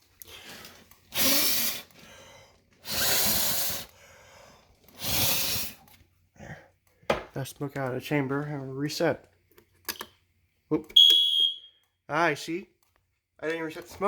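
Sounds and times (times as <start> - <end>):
hard puffs of breath: 0.2 - 6.7.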